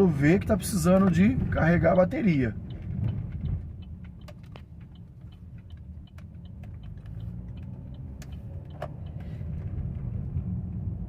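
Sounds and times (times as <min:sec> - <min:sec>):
car cabin road rumble: 0:00.0 - 0:11.0
light ticking: 0:02.5 - 0:09.3.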